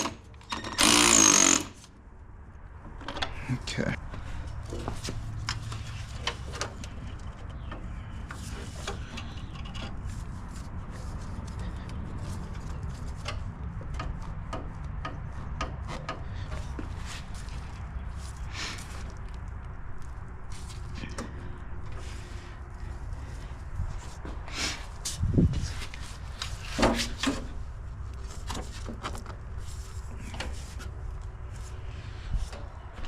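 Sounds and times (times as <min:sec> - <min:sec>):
hand tools clicking and tapping: 0:13.2 - 0:16.9.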